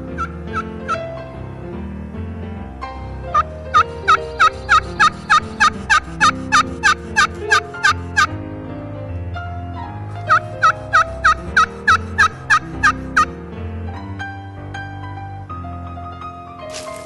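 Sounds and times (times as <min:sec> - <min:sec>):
background music: 0:00.0 - 0:17.0
turkey yelps: 0:00.2 - 0:01.0, 0:03.3 - 0:08.3, 0:10.3 - 0:13.3.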